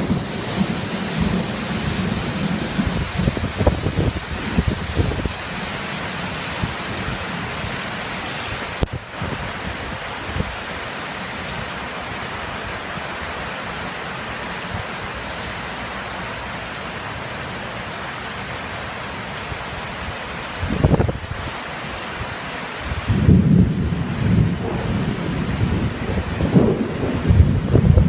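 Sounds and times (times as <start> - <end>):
low thunder rumble: 0.0 - 5.6, 22.9 - 28.0
heavy rain pouring: 0.0 - 28.0.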